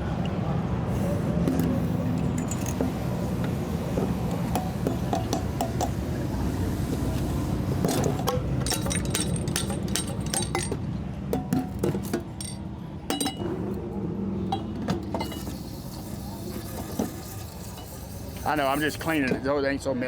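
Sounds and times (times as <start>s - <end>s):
metal parts clinking: 1.6s - 3.0s, 7.8s - 10.8s, 11.5s - 13.5s.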